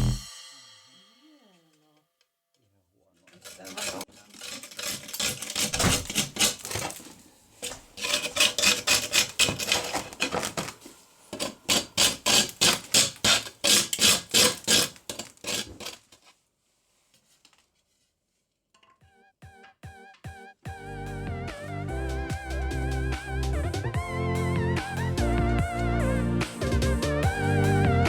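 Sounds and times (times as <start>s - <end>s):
hand scraping strokes: 3.3s - 18.0s.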